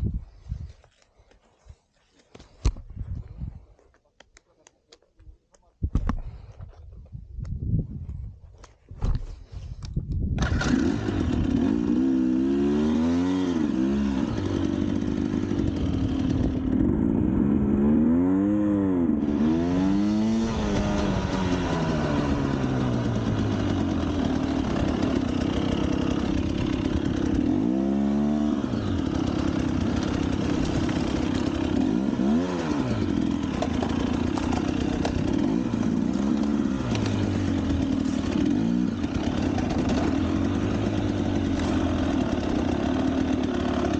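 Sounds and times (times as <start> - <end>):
motorcycle engine revving: 10.4 - 43.9.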